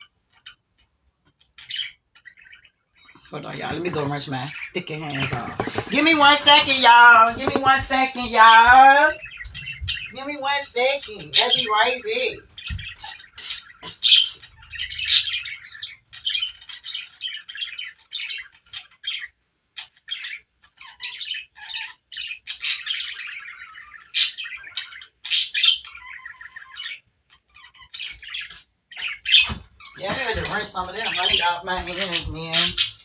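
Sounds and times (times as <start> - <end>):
bird calling: 3.0 - 19.2, 27.9 - 33.0.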